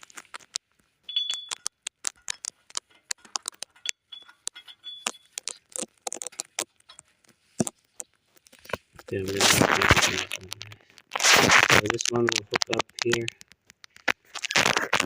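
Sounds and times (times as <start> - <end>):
small metal parts clinking: 1.1 - 7.1.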